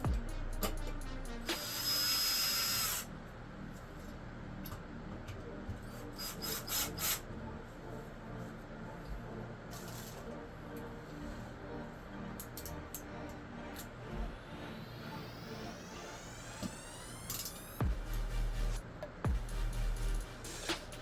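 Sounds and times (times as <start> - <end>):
power drill driving screw: 1.5 - 3.1, 6.2 - 7.2.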